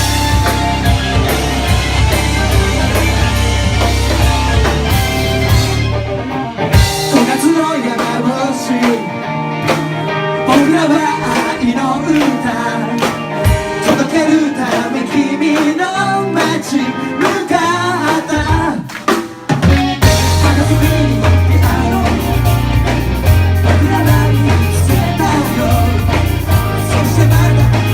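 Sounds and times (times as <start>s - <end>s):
melodic line: 0.0s - 7.4s
heavy bass: 0.0s - 7.6s, 19.7s - 27.9s
drums: 0.0s - 27.9s
guitar: 0.0s - 27.9s
live rock band playing: 0.0s - 27.9s.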